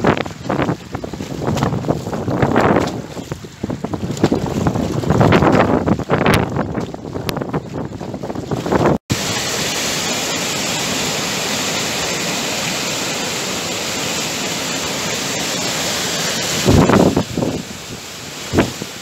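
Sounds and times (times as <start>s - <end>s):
wind gusting on microphone: 0.0s - 10.4s, 14.9s - 19.0s
steady rushing noise: 0.0s - 19.0s.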